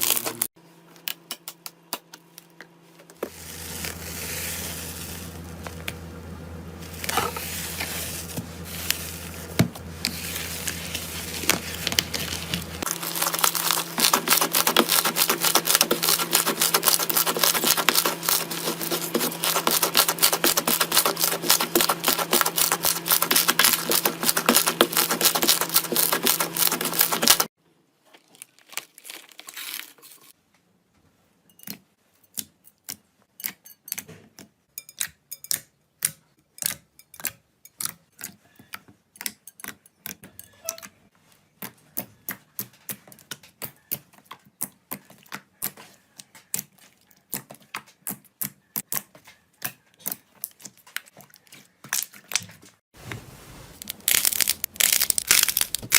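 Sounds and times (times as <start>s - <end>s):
slime crackling: 6.9s - 27.5s, 53.8s - 55.9s.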